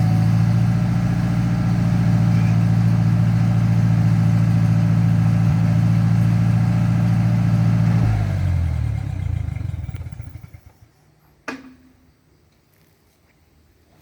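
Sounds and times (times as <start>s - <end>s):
tractor engine running: 0.0s - 10.9s.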